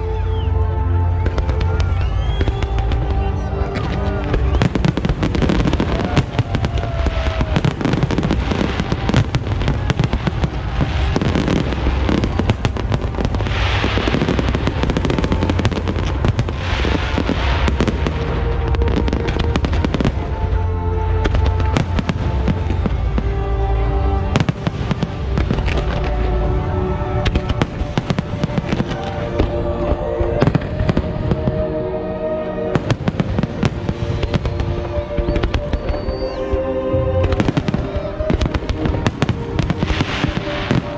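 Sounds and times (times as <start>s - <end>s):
fireworks crackling: 0.0s - 40.9s
fireworks booming: 1.2s - 20.6s, 27.2s - 31.8s
fireworks hissing bursts: 1.4s - 20.3s.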